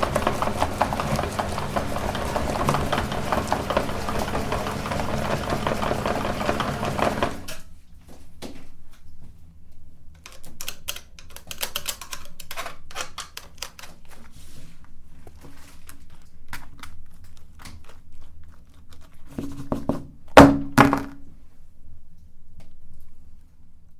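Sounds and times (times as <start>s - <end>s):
electric meat grinder humming: 0.0s - 7.6s
clicks and crackles: 10.2s - 14.3s, 15.2s - 19.3s.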